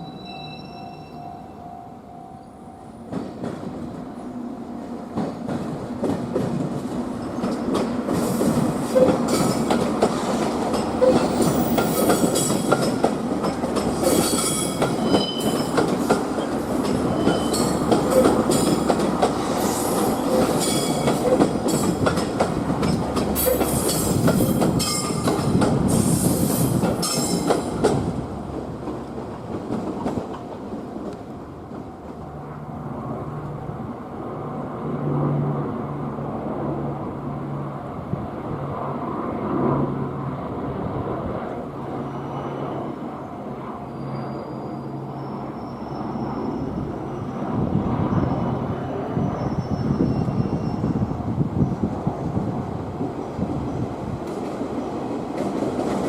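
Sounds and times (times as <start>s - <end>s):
train wheels squealing: 0.0s - 3.3s, 10.9s - 13.0s, 14.0s - 18.9s, 19.6s - 21.4s, 23.4s - 27.8s, 42.0s - 51.8s
train wheels clacking over rail joints: 5.1s - 31.9s.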